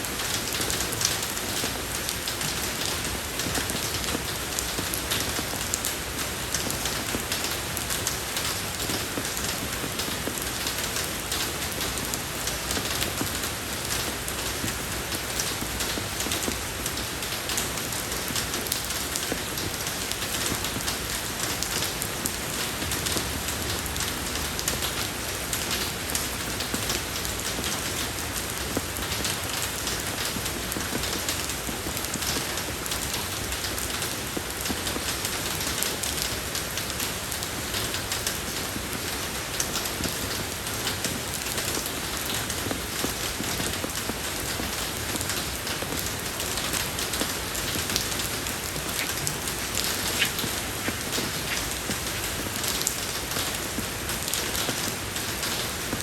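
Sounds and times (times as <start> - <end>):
rain falling on road: 0.0 - 56.0.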